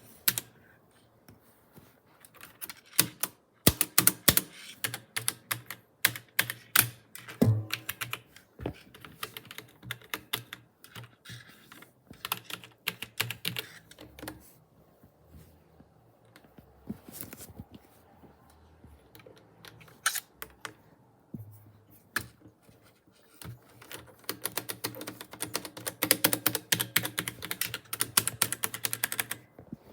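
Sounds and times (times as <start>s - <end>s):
keyboard typing: 2.4s - 8.2s, 12.2s - 14.4s, 23.7s - 29.4s.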